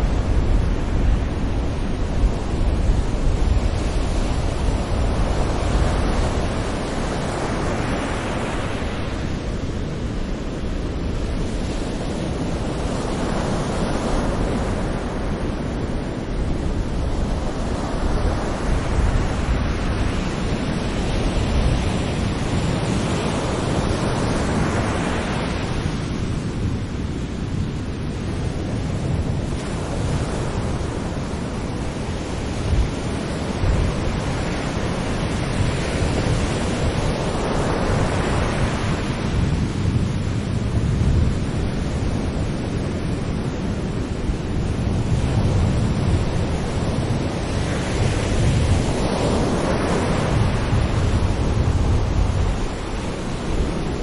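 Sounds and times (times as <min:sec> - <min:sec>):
low rumble of surf: 0:00.0 - 0:54.0
ocean waves breaking on beach: 0:00.0 - 0:54.0.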